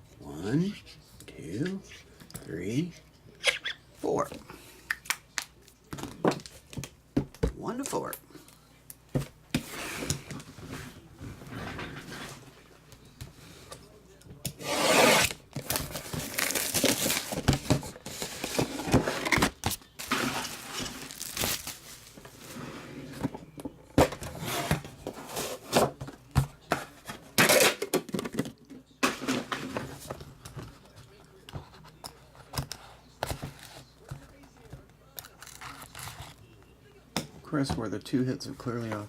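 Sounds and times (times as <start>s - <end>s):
plastic wrapping crinkling and tearing: 15.3s - 17.5s, 19.7s - 22.1s.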